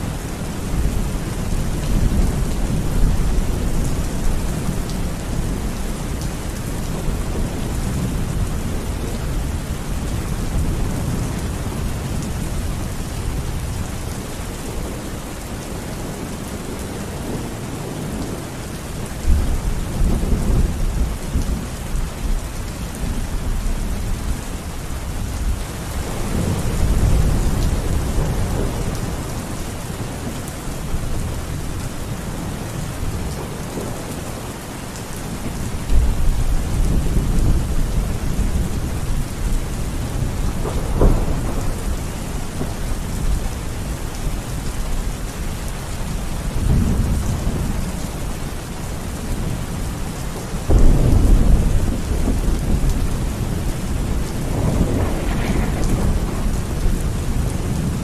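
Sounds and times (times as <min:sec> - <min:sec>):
steady rain: 0:00.0 - 0:58.0
thunder rolling: 0:40.1 - 0:42.0, 0:50.7 - 0:58.0.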